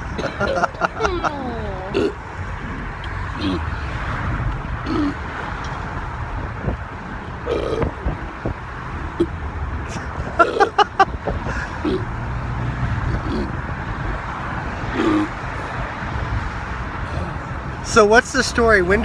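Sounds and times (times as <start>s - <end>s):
low rumble of traffic: 0.0s - 19.0s
short pitched vocal sounds: 1.0s - 2.2s, 17.0s - 17.8s.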